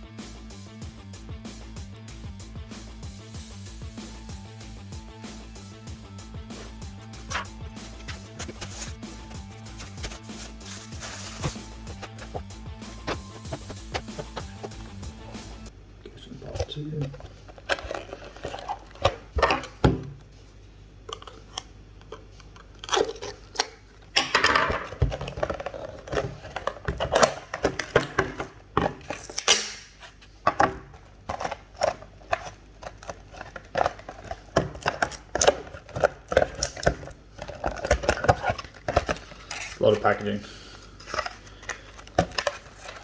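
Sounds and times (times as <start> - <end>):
sharp clicks and scrapes: 6.5 - 14.9
packaging rustling and crinkling: 6.5 - 15.5, 17.0 - 19.7, 25.1 - 40.0, 41.0 - 43.0.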